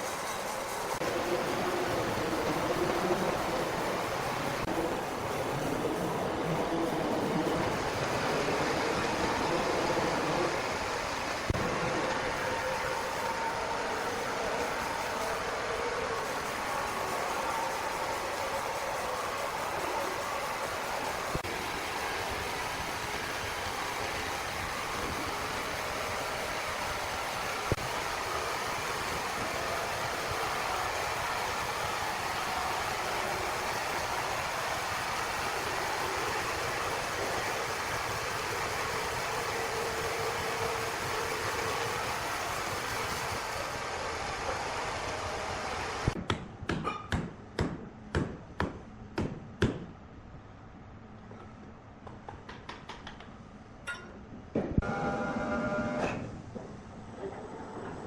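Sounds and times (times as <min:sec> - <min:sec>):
heavy machinery running: 0:00.0 - 0:46.1.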